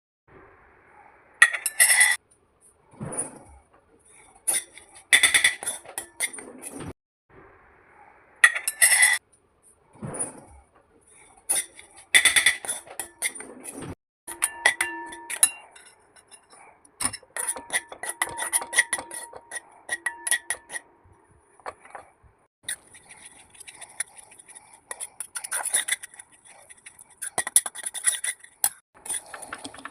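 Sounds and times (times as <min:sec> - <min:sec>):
metal utensils clinking on cookware: 0:01.4 - 0:02.2, 0:04.1 - 0:06.8, 0:08.4 - 0:09.2, 0:11.2 - 0:13.7, 0:14.3 - 0:20.9, 0:22.7 - 0:29.9.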